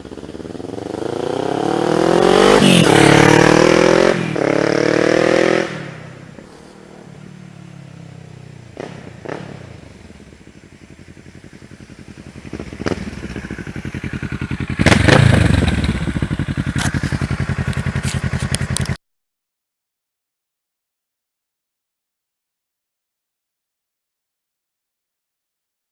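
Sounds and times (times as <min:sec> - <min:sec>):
motorcycle engine revving and idling: 0:00.0 - 0:19.0.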